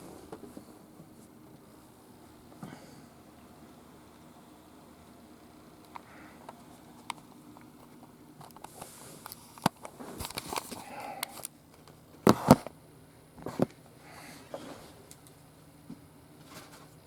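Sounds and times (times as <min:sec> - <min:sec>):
handling clicks and rustling: 0:05.9 - 0:12.7.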